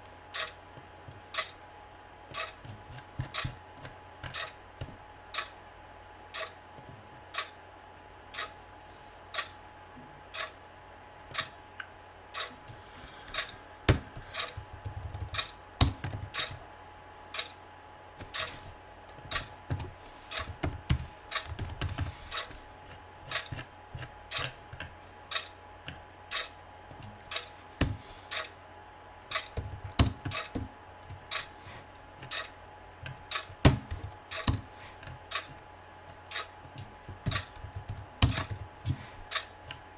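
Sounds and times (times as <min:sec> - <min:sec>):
clock ticking: 0:08.3 - 0:08.5, 0:10.3 - 0:10.5, 0:12.3 - 0:12.6, 0:13.3 - 0:16.6, 0:18.2 - 0:18.6, 0:23.3 - 0:23.7, 0:24.3 - 0:25.6, 0:26.3 - 0:26.5, 0:27.2 - 0:28.5, 0:29.2 - 0:31.5, 0:32.2 - 0:34.7, 0:36.3 - 0:39.8
computer keyboard typing: 0:12.7 - 0:16.6, 0:18.2 - 0:22.6, 0:29.3 - 0:31.3, 0:33.4 - 0:34.7, 0:37.2 - 0:39.0.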